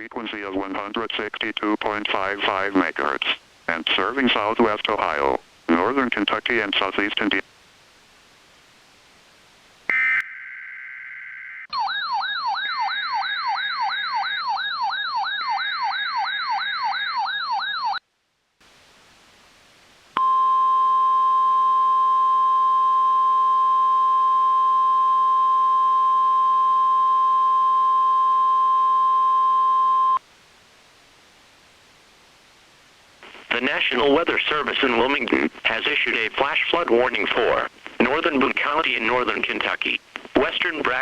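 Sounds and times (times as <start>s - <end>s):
faint hiss: 0.0s - 9.9s, 18.3s - 20.2s, 30.2s - 41.0s
electronic yelp siren: 9.9s - 18.0s.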